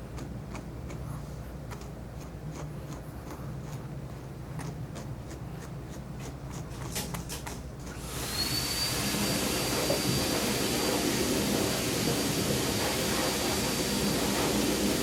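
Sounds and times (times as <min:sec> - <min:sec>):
electric blower motor whining: 0:08.0 - 0:15.0.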